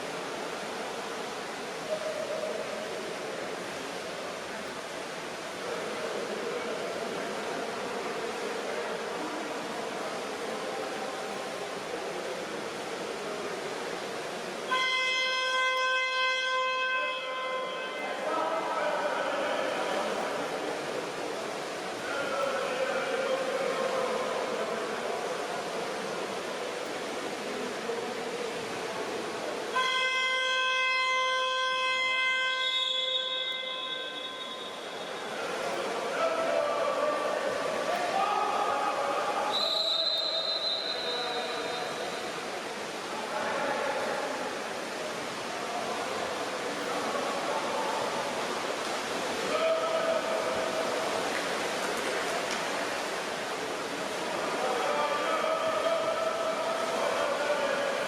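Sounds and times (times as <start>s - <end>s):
buzzer horn tone: 14.7s - 18.2s, 29.8s - 34.9s
loud held call: 14.7s - 20.2s, 29.7s - 42.1s
distant voices: 17.0s - 58.0s
splashing water: 31.9s - 58.0s.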